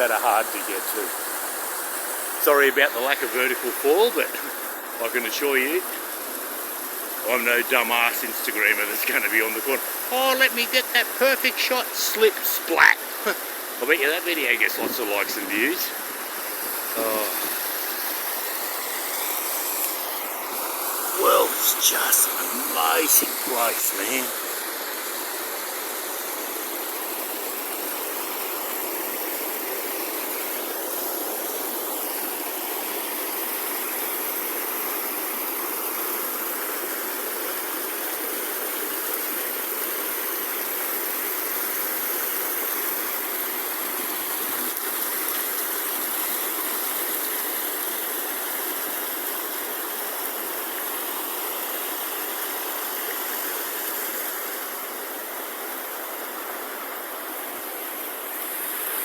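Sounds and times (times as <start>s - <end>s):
water rushing over rocks: 0.0s - 25.1s.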